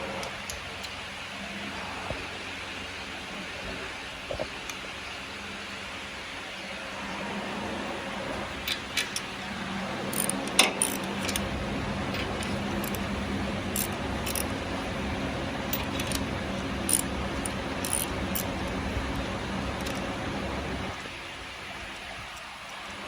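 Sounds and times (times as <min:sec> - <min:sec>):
car engine running: 0:09.4 - 0:21.0.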